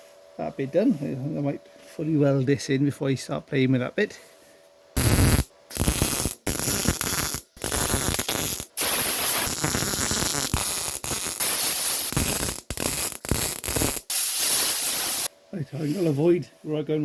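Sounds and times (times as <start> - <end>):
welding arc crackling: 5.0 - 15.3.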